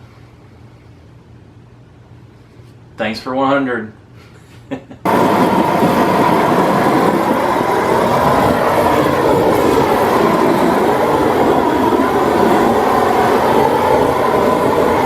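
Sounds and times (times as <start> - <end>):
loud steady roar: 5.1 - 15.0.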